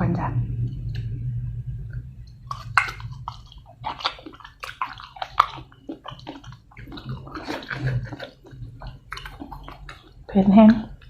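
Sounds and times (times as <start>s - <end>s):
person chewing and slurping: 2.3s - 11.0s.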